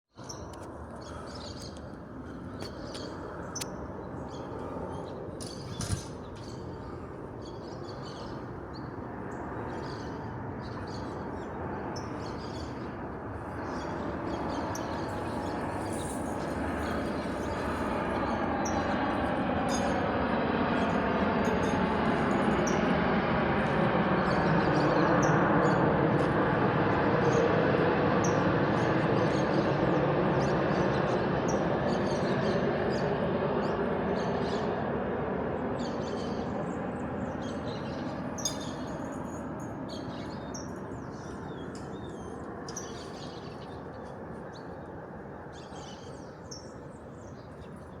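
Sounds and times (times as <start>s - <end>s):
birds chirping: 0.2s - 19.0s, 35.8s - 48.0s
aircraft engine noise: 0.2s - 48.0s.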